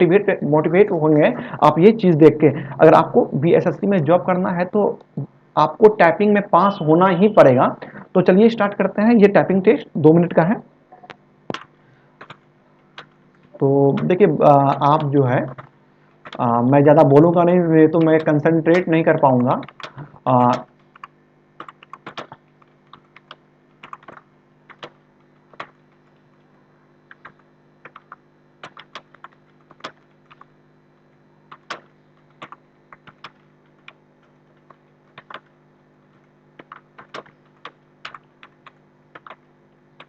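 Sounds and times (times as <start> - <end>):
faint steady hum: 0.0 - 40.0
keyboard typing: 10.9 - 26.5, 27.1 - 30.6, 31.5 - 40.0.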